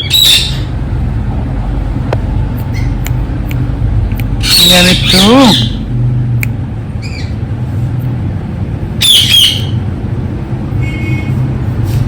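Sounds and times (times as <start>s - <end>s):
parrot squawking: 0.0s - 0.8s, 4.4s - 5.9s, 7.0s - 7.4s, 9.0s - 9.9s
steady low hum: 0.0s - 12.0s.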